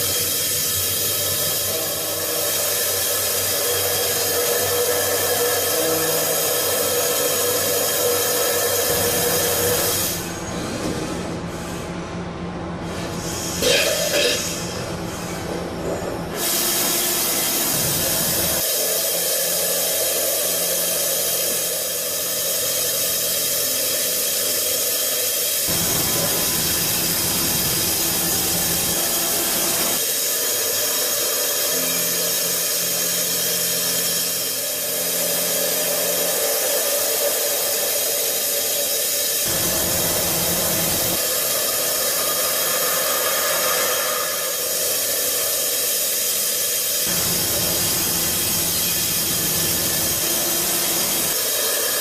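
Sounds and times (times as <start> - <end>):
loud spray hiss: 0.0 - 10.2, 16.4 - 52.0
machine hum: 25.7 - 52.0.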